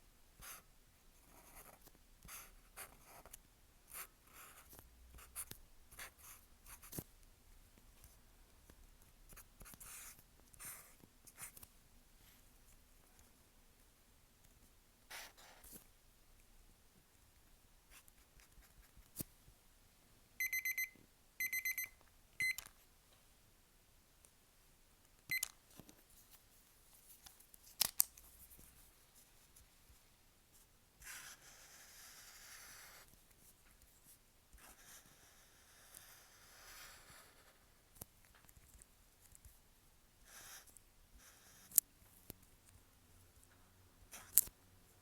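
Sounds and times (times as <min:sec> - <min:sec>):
timer alarm rapid beeps: 0:20.4 - 0:22.6
marker scratching on paper: 0:31.0 - 0:33.1, 0:34.6 - 0:37.6, 0:40.2 - 0:41.8.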